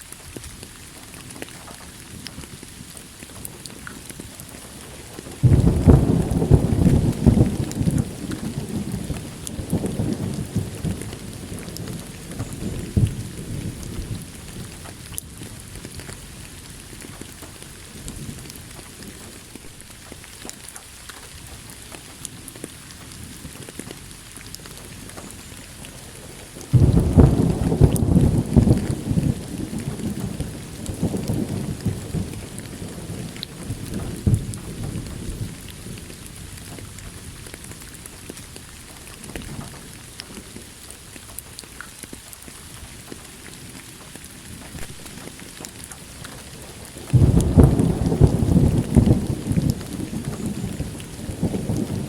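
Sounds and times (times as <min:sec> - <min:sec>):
steady rain: 0:00.0 - 0:52.0
thunder clap rumbling: 0:04.2 - 0:19.9, 0:24.6 - 0:40.4, 0:46.7 - 0:52.0.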